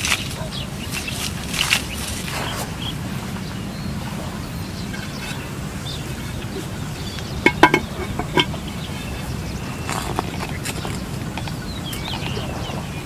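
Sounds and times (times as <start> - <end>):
steady low background noise: 0.0 - 13.0
utensils clinking against cookware: 7.3 - 8.7.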